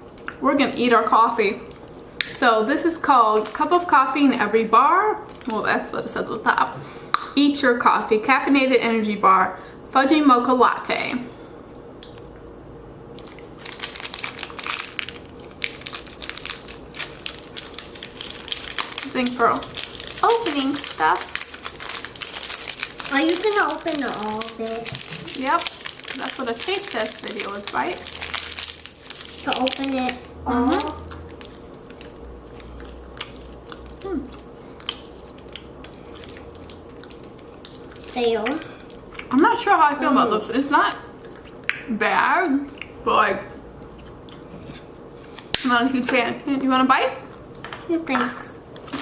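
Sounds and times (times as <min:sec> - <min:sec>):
plastic wrapper crinkling: 0:05.2 - 0:05.8, 0:13.1 - 0:39.3, 0:48.1 - 0:49.0.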